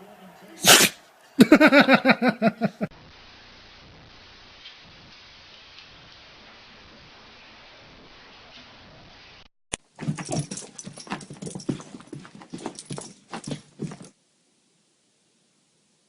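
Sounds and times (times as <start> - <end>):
steady hiss: 2.5 - 9.5.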